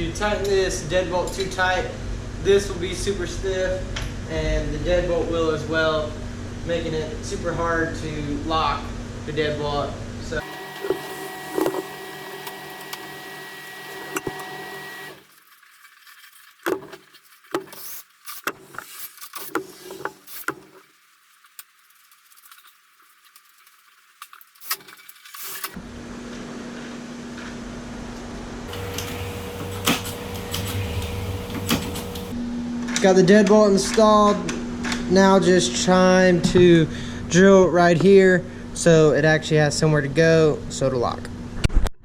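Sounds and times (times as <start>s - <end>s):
cordless drill motor running: 10.4s - 15.3s, 28.7s - 32.4s.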